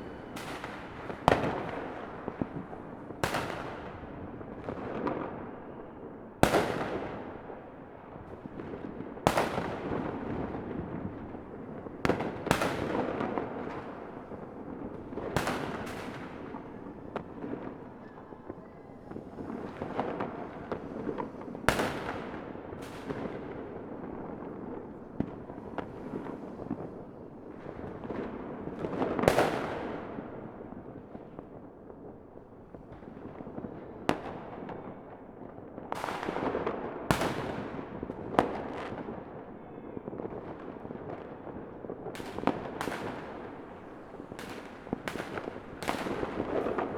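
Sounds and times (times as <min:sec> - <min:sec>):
fireworks bangs: 0:00.0 - 0:32.0, 0:32.7 - 0:46.9
fireworks crackling and rumbling: 0:00.0 - 0:46.9.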